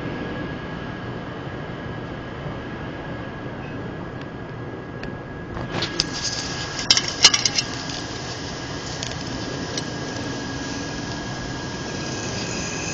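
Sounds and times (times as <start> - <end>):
thunderstorm hiss: 5.4 - 12.9
sharp crackling clicks: 5.6 - 12.9.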